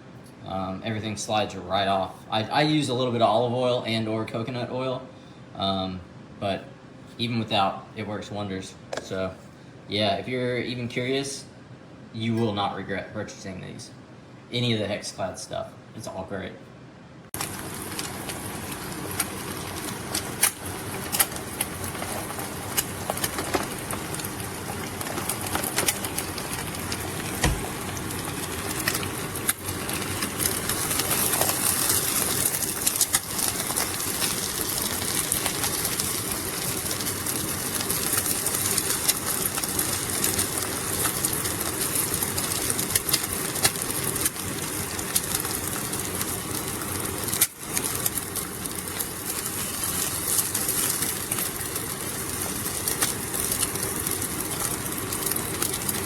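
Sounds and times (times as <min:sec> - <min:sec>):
food sizzling in a pan: 0:17.4 - 0:56.0.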